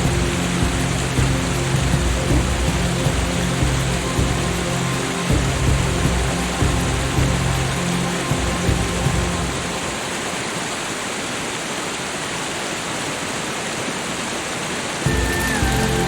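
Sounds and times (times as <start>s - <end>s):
soft ambient music: 0.0s - 11.4s, 15.0s - 16.0s
falling water hiss: 0.0s - 16.0s.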